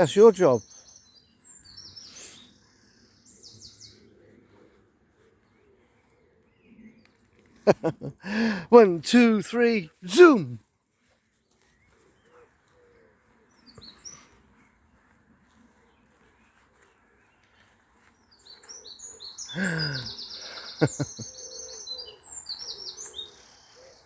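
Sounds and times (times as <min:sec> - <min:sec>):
songbird chirping and trilling: 0:00.0 - 0:08.1, 0:13.4 - 0:14.4, 0:15.4 - 0:24.0.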